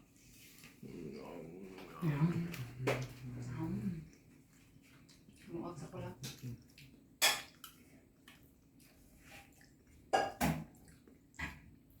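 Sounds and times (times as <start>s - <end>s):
cutlery clinking against plate: 7.2s - 7.8s.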